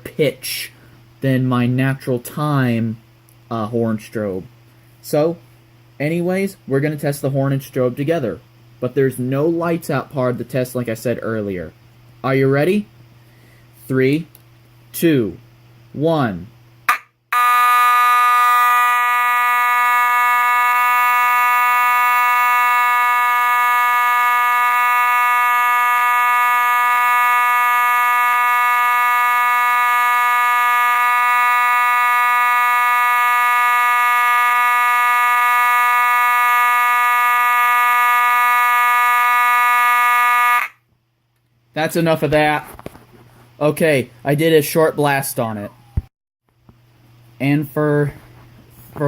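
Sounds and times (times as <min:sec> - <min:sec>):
fire alarm horn buzzing: 0:16.9 - 0:40.8.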